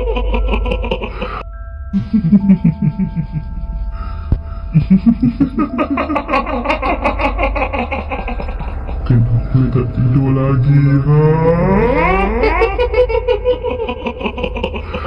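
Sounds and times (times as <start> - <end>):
high-pitched cackling laugh: 0.0 - 1.4, 2.0 - 3.4, 4.8 - 9.9, 11.6 - 15.0
low rumbling drone: 0.0 - 15.0.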